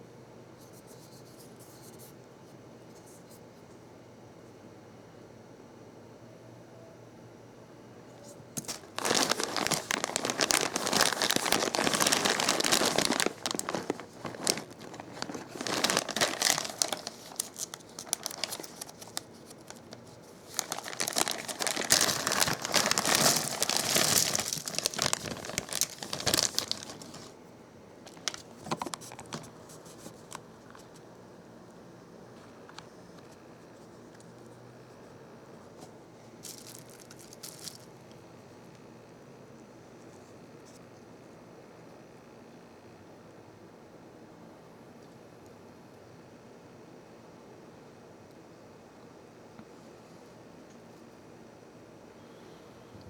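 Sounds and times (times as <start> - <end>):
plastic packaging crinkling: 8.5 - 27.4, 28.0 - 31.0, 36.4 - 38.0.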